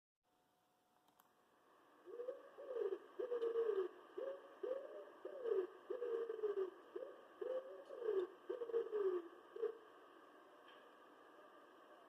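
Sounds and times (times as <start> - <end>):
pigeon cooing: 2.0 - 9.9.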